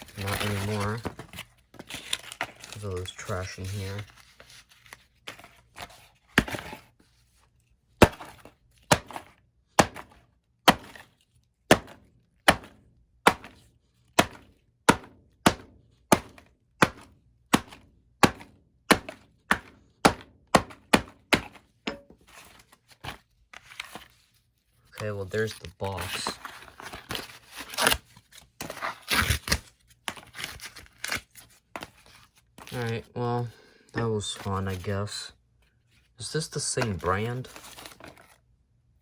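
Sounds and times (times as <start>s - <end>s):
hammer striking cardboard: 8.0s - 11.0s, 11.7s - 22.2s.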